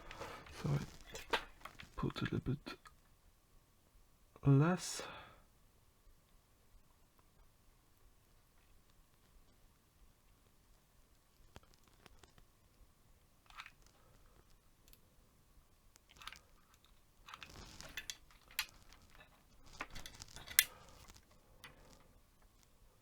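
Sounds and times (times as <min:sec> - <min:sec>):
small clicks of parts and tools: 0:13.5 - 0:15.0, 0:16.0 - 0:22.6.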